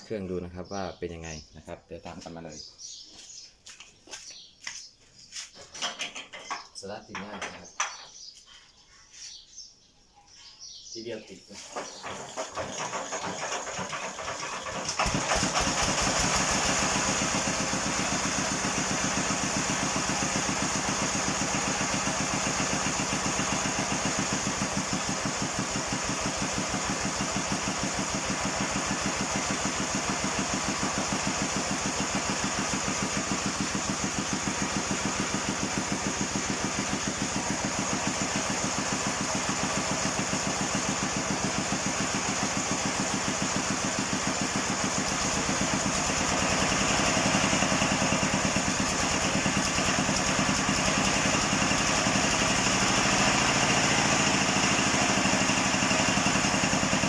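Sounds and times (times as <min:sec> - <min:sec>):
diesel tractor engine running: 0:11.7 - 0:57.0.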